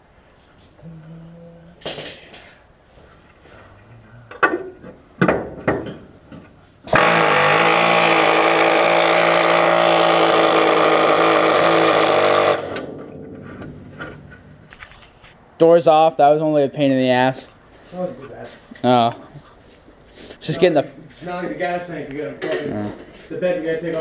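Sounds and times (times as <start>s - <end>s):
pneumatic air chisel hammering: 6.8s - 12.9s.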